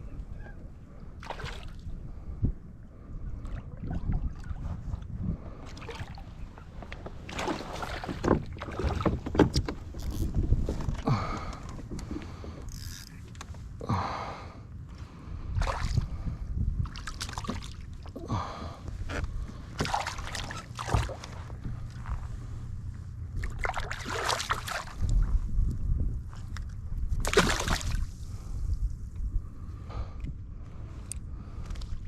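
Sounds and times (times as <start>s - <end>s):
wind rumble on microphone: 0.0s - 13.8s, 14.5s - 32.0s
water splashing around a kayak: 1.0s - 2.1s, 3.0s - 13.3s, 15.5s - 25.7s, 26.3s - 28.8s.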